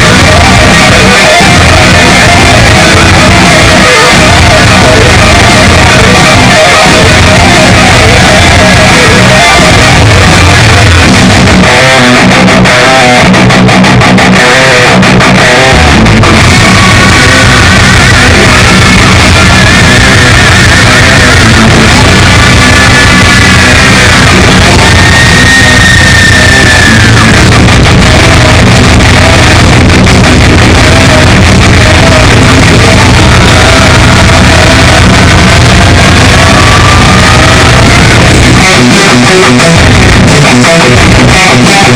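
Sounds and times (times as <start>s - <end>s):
loud rock music: 0.0s - 41.9s.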